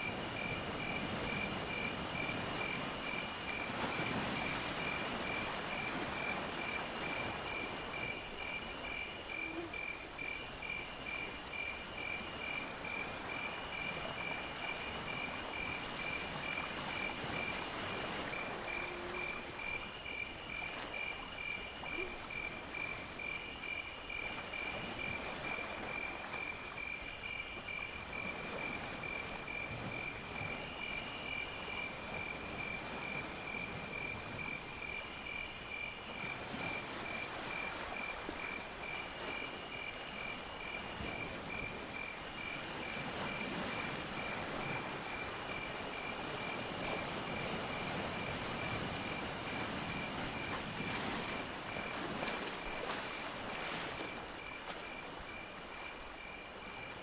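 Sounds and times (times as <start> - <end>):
cricket trilling: 0.0 - 57.0
faint low frog croaks: 18.3 - 21.1.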